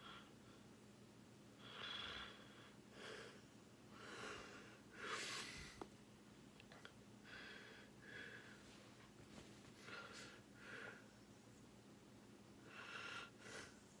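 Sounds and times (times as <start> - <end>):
faint sleeping breathing: 12.6 - 14.0.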